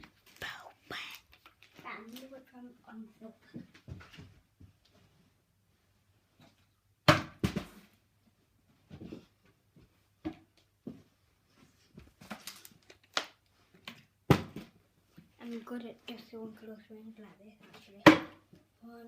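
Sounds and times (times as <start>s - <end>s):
plastic bottle landing on table: 7.0s - 7.8s, 14.3s - 14.7s.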